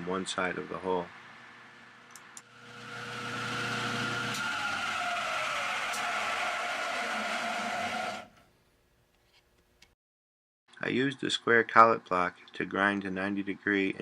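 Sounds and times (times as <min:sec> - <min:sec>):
end mill squealing: 0:02.8 - 0:08.4.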